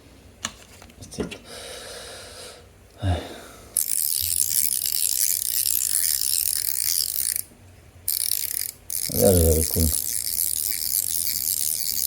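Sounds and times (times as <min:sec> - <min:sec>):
fidget toy clicking rapidly: 0:03.8 - 0:07.5, 0:08.1 - 0:12.0.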